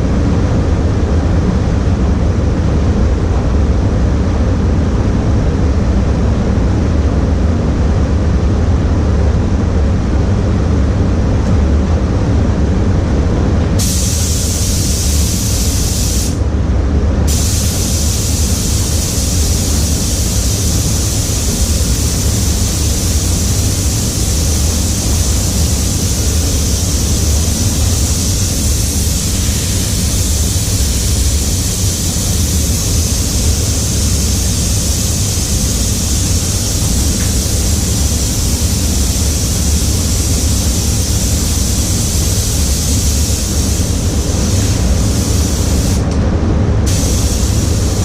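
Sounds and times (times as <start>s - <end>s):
constant low rumble: 0.0s - 48.0s
paint spray gun hissing: 13.8s - 16.4s, 17.3s - 46.1s, 46.9s - 48.0s.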